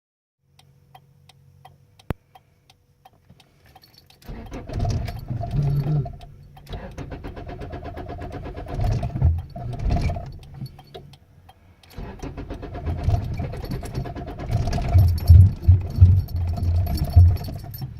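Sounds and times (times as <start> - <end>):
car engine cranking: 3.7 - 11.2, 11.8 - 17.9.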